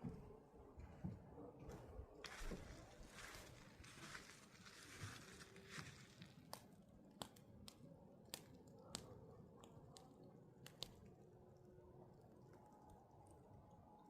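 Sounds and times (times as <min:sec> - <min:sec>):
burning wood popping: 0:02.3 - 0:09.0.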